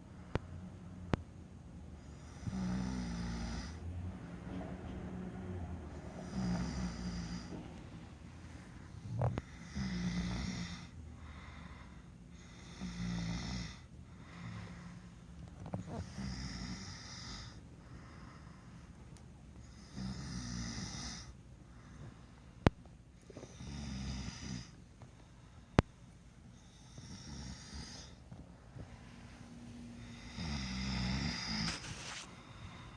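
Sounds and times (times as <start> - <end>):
man snoring: 2.0 - 3.8, 5.9 - 7.5, 9.0 - 10.9, 12.4 - 13.8, 15.8 - 17.6, 19.7 - 21.3, 23.5 - 24.7, 26.8 - 28.2, 30.0 - 32.2.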